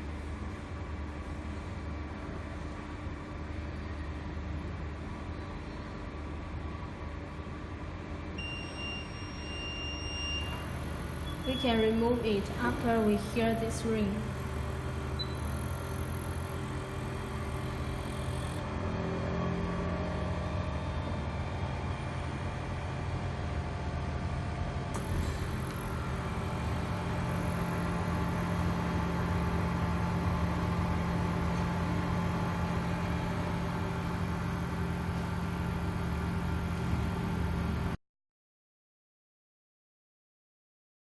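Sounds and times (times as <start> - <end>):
fans and blowers humming: 0.0 - 38.0
faint whining tones: 8.3 - 18.6.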